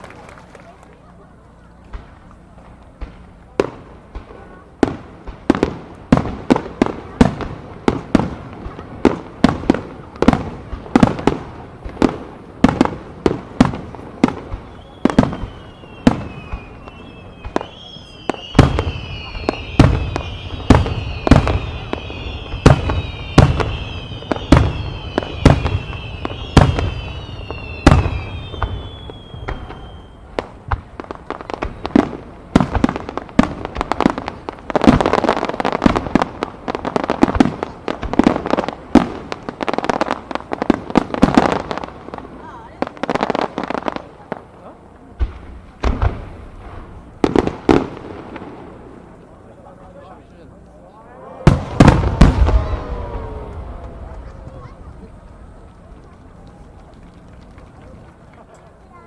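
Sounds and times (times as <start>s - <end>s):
fireworks bangs: 0.0s - 59.0s
falling firework whistles: 2.0s - 44.0s, 51.2s - 55.1s
deeper firework booms: 2.9s - 44.4s, 45.2s - 49.3s, 51.4s - 58.0s.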